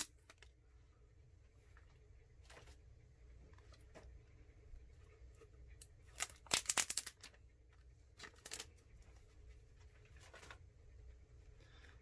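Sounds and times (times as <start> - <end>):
plastic wrapping crinkling and tearing: 6.1 - 7.4, 8.2 - 8.8.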